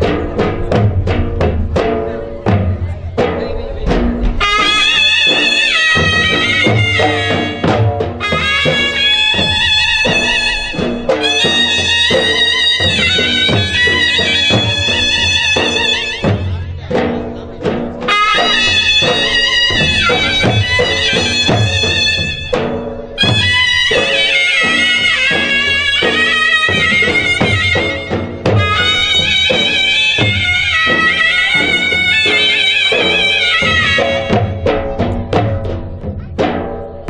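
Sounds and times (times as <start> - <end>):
reedy wind instrument melody: 0.0 - 36.0
steady drum beats: 0.0 - 37.0.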